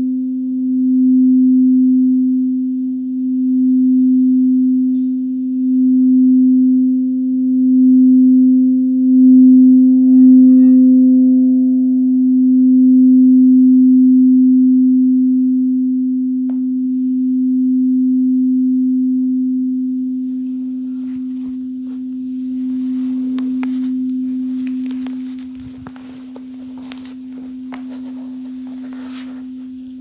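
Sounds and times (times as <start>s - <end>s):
singing bowl low tone: 0.0s - 30.0s
higher overtone: 20.1s - 30.0s
faint ticks: 20.4s - 30.0s.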